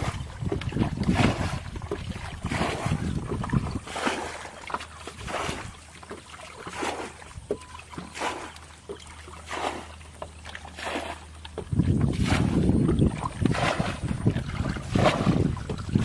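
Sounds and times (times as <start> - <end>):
wind rumbling on microphone: 0.0 - 4.4, 11.5 - 16.0
water splashing and sloshing: 0.0 - 16.0.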